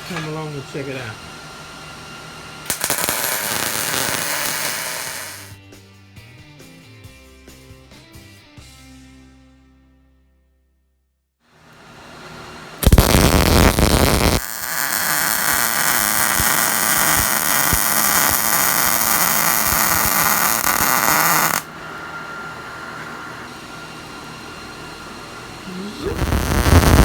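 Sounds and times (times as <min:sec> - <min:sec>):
welder crackling and hissing: 0:02.6 - 0:05.6, 0:12.8 - 0:21.7, 0:25.7 - 0:27.0.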